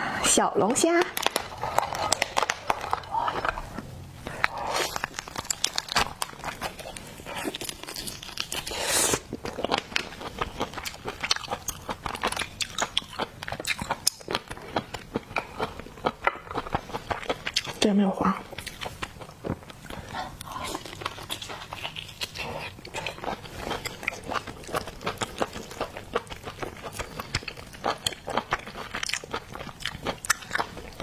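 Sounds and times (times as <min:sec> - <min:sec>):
crayfish shells cracking: 0:01.0 - 0:03.6, 0:04.9 - 0:08.7
chewing: 0:01.2 - 0:31.0.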